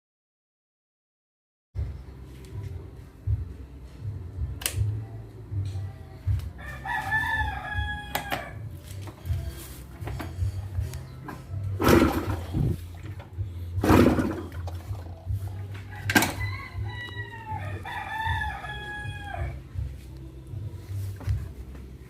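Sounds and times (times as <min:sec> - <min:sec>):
rooster crowing: 0:06.6 - 0:08.7, 0:15.8 - 0:19.6
low uneven rumble: 0:08.8 - 0:18.5.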